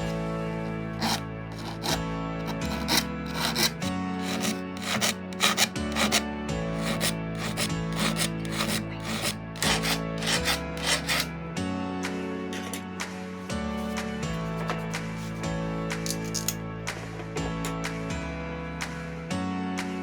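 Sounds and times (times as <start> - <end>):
background music with sustained chords: 0.0 - 20.0
file rasping on saw teeth: 1.0 - 11.3.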